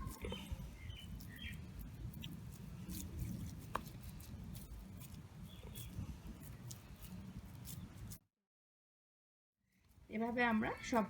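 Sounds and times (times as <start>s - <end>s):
hands squishing raw mince: 0.0s - 8.2s.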